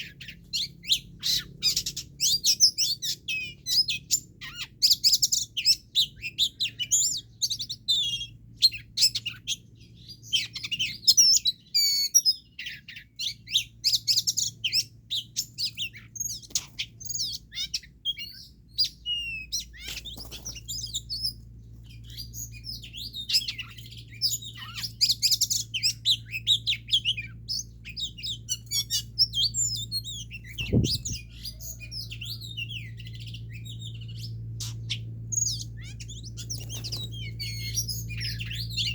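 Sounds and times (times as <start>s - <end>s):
songbird chirping and trilling: 0.0s - 38.9s
steady low hum: 13.0s - 38.9s.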